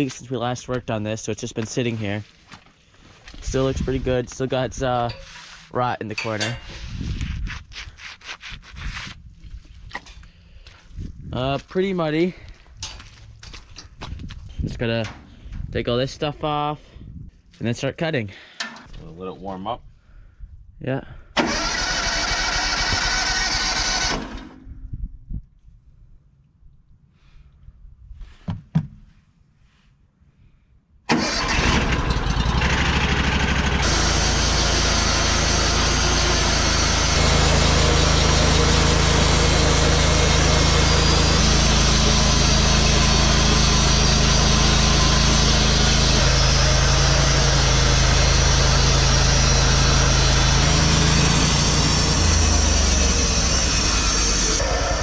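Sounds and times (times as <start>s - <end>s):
band saw cutting log: 3.4s - 5.8s, 31.1s - 55.0s.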